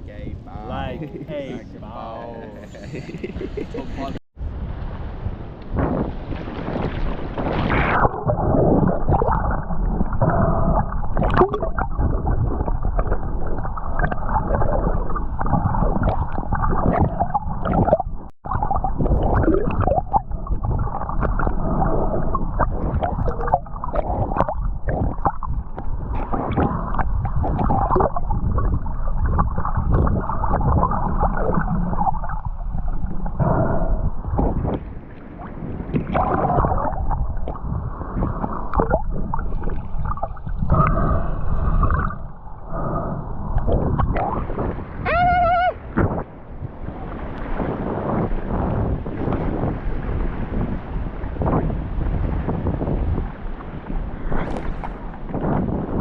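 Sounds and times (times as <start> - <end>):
muffled underwater gurgling: 7.4 - 49.6.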